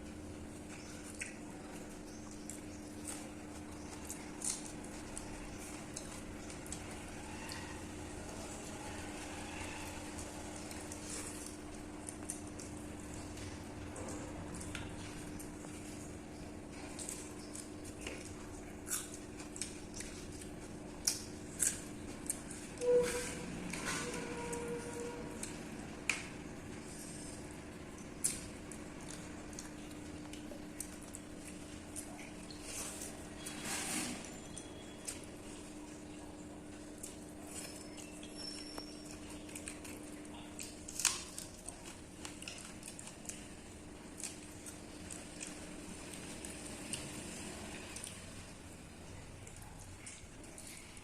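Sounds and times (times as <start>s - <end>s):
faint steady hum: 0.0s - 51.0s
wet chewing smacks: 0.6s - 22.8s, 25.4s - 33.2s, 34.5s - 48.3s, 49.1s - 51.0s
wet mouth clicks and smacks: 1.1s - 1.4s.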